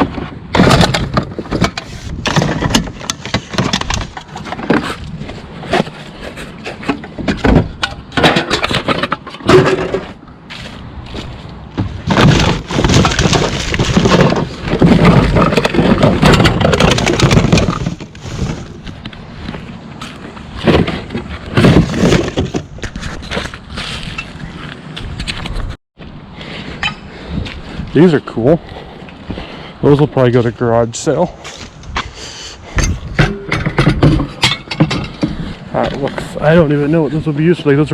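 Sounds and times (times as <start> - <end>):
household items knocking and clattering: 0.0 - 4.9, 6.8 - 10.2, 11.8 - 18.7, 20.6 - 23.4, 32.8 - 35.4.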